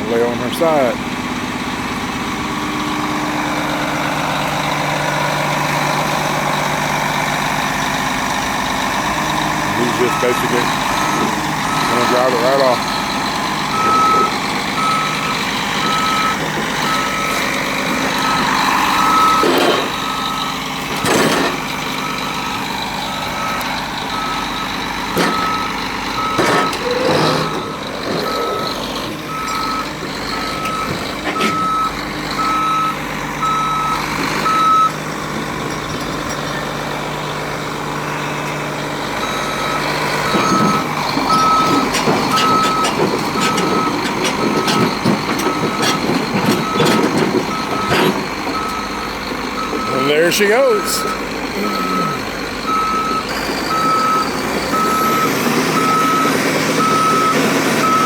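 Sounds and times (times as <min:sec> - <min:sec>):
diesel engine running: 0:00.0 - 0:58.0
excavator travel alarm beeping: 0:04.1 - 0:36.8, 0:38.0 - 0:58.0
metal clanks: 0:09.0 - 0:22.1, 0:23.5 - 0:31.7, 0:35.2 - 0:37.1, 0:40.2 - 0:48.8.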